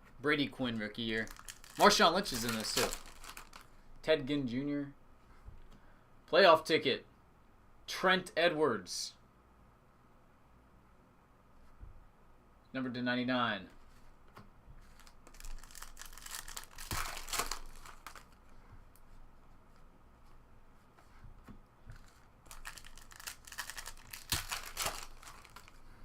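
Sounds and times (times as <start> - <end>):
foil wrappers tearing and crinkling: 1.0 - 3.7, 14.9 - 18.4, 22.5 - 25.8.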